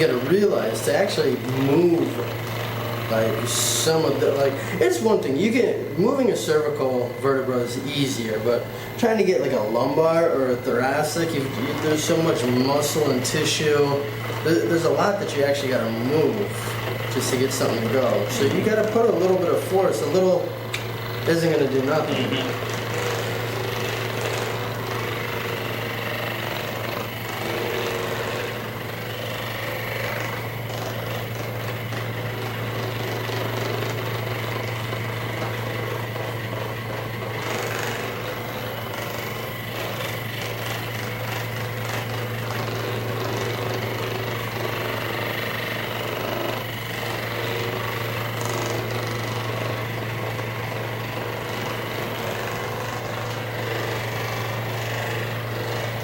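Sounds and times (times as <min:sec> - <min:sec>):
massage gun buzzing: 0:00.0 - 0:56.0.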